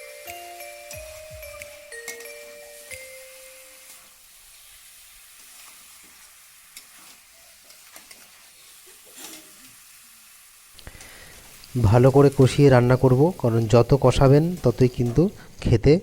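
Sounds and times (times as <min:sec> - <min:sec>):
music chime notes: 0:00.0 - 0:03.9
meat sizzling in pan: 0:00.0 - 0:16.0.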